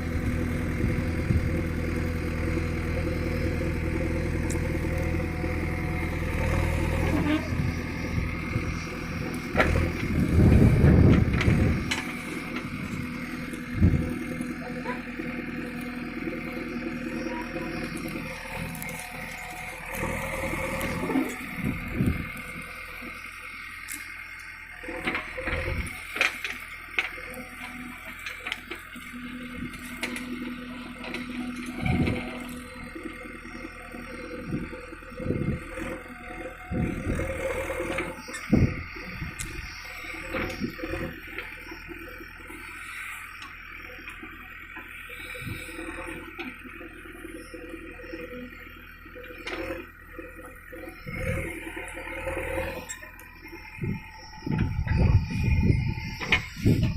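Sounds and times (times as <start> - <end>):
diesel engine running: 0.0 - 56.9
steady low hum: 50.2 - 56.9.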